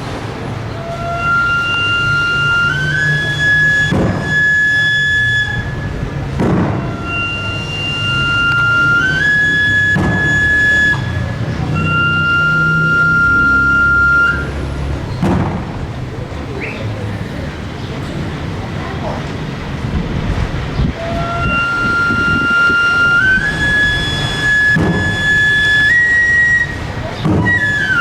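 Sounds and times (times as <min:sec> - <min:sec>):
reed pipe playing slow tune: 0:00.0 - 0:15.0, 0:20.8 - 0:28.0
deep drum strikes: 0:03.9 - 0:04.4, 0:06.3 - 0:07.2, 0:09.8 - 0:10.4, 0:15.2 - 0:16.0, 0:24.7 - 0:25.2, 0:27.2 - 0:27.7.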